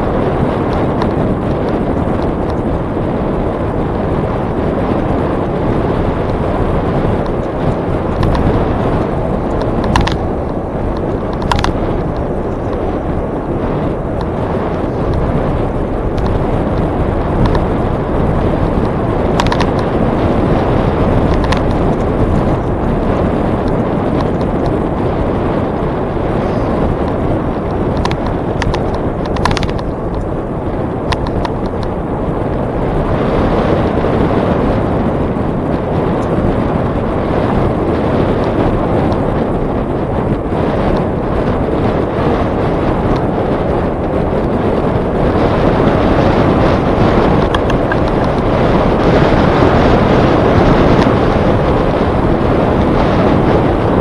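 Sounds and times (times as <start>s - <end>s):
bike clicks and ticks: 0.0s - 54.0s
wind buffeting microphone: 0.0s - 54.0s.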